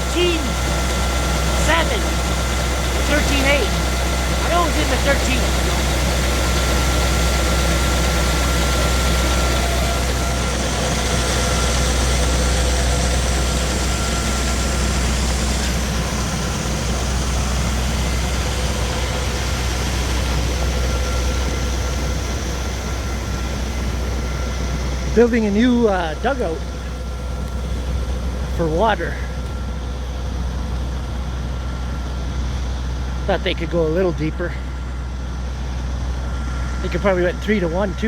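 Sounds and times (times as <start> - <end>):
combine harvester engine drone: 0.0 - 38.0
machinery rumble: 0.0 - 38.0
thin steady whine: 0.0 - 38.0.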